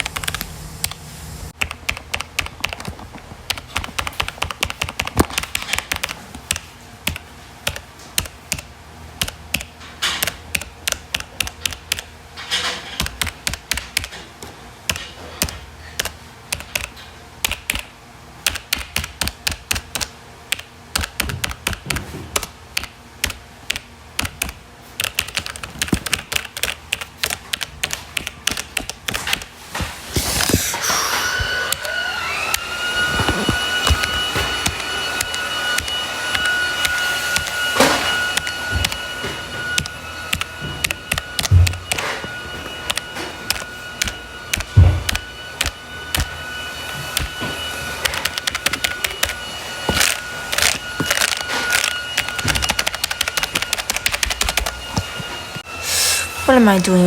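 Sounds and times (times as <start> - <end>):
computer keyboard typing: 0.0 - 1.0, 1.6 - 14.2, 14.9 - 29.5, 39.7 - 42.0, 42.9 - 46.3, 48.0 - 49.4, 50.0 - 54.7.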